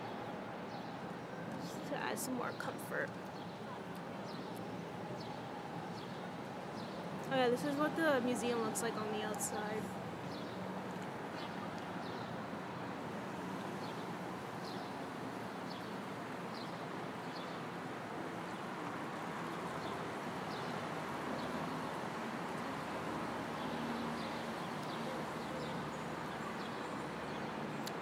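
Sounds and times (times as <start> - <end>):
traffic hum: 0.0 - 28.0.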